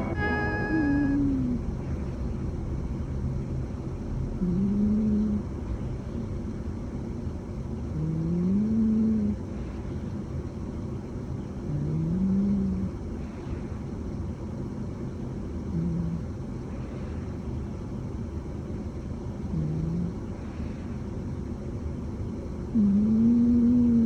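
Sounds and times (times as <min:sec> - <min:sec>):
cat snoring: 0:00.0 - 0:01.6, 0:04.4 - 0:05.5, 0:07.9 - 0:09.4, 0:11.6 - 0:12.9, 0:15.7 - 0:16.3, 0:19.5 - 0:20.3, 0:22.7 - 0:24.0
steady low background noise: 0:00.0 - 0:24.0.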